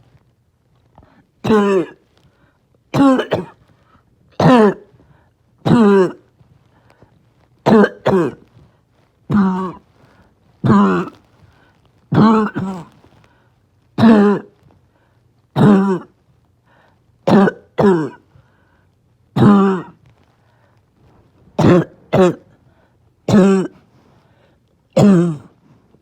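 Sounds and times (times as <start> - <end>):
person barking cough: 1.4 - 2.0, 3.0 - 3.6, 4.4 - 4.9, 5.7 - 6.2, 7.7 - 8.4, 9.3 - 9.8, 10.6 - 11.2, 12.2 - 12.9, 14.0 - 14.5, 15.6 - 16.1, 17.3 - 18.2, 19.4 - 20.0, 21.6 - 22.5, 23.3 - 23.8, 25.0 - 25.6.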